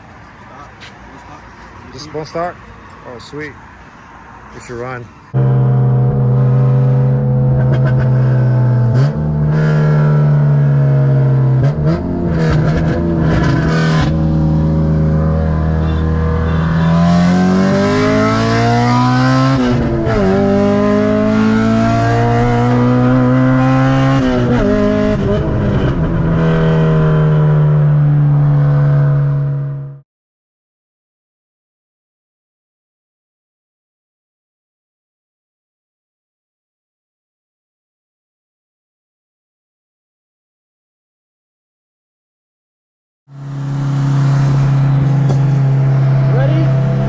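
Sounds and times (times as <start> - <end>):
car engine accelerating hard: 5.3 - 30.0, 43.3 - 47.0.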